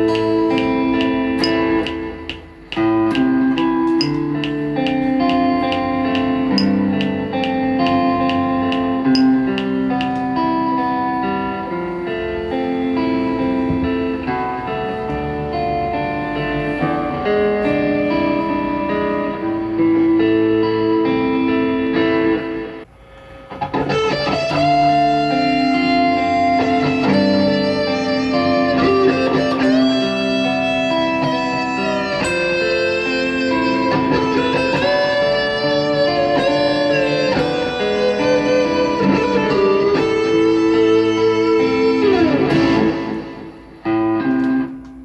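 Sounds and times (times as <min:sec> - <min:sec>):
electric guitar lead line: 0:00.0 - 0:45.0.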